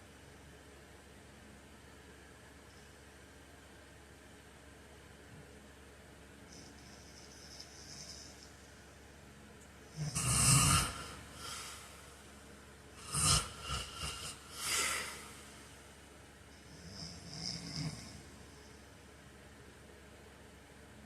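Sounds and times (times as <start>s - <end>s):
man snoring: 7.1s - 8.3s, 9.9s - 12.2s, 13.0s - 15.7s, 16.6s - 18.6s.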